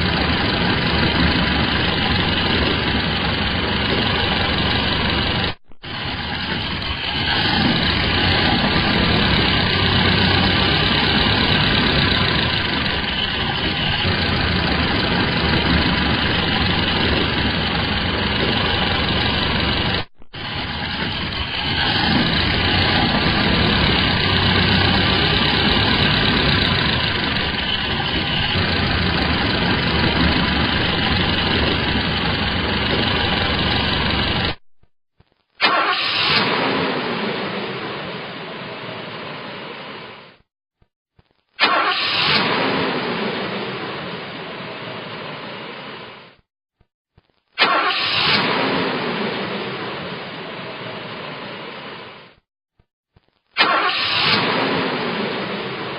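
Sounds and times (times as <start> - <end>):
car engine idling: 0.0 - 34.6.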